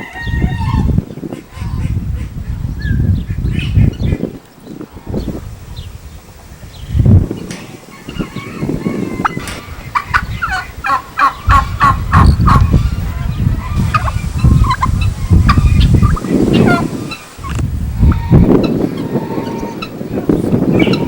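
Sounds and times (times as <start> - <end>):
farm fowl calling: 0.0 - 2.3, 7.4 - 21.0.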